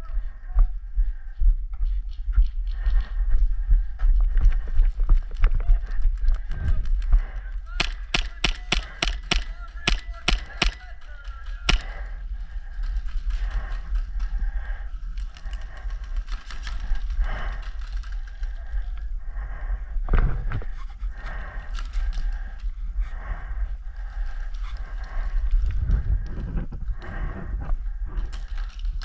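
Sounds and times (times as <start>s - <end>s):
faint ticks and rustles: 0.0s - 19.2s, 20.1s - 29.0s
low rumble of wind: 0.0s - 29.0s
airsoft pistol shot: 7.8s - 10.8s, 11.7s - 11.9s.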